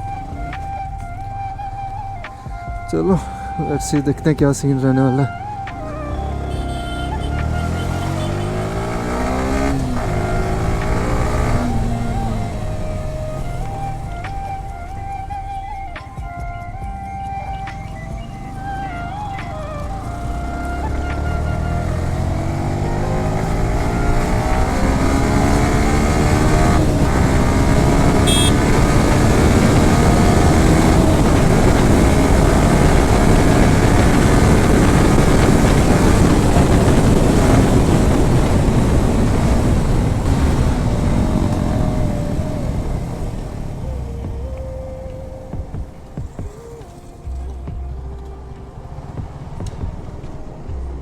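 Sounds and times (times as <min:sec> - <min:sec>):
motorcycle engine accelerating: 0:00.0 - 0:51.0
wind rush on microphone: 0:00.0 - 0:51.0.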